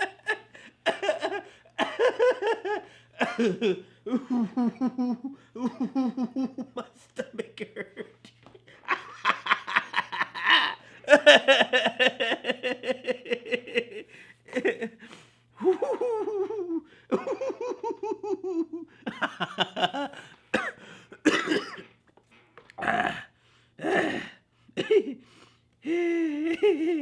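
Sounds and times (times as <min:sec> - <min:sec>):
man laughing: 0:00.0 - 0:21.7, 0:24.8 - 0:25.2, 0:25.8 - 0:27.0
man coughing: 0:03.2 - 0:03.7, 0:20.5 - 0:22.0, 0:23.8 - 0:25.2.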